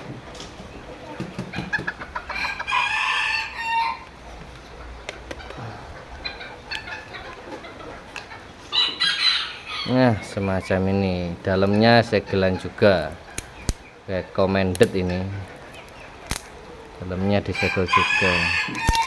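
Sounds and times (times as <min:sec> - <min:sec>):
rooster crowing: 0:02.1 - 0:04.2, 0:08.7 - 0:10.3, 0:17.3 - 0:19.0.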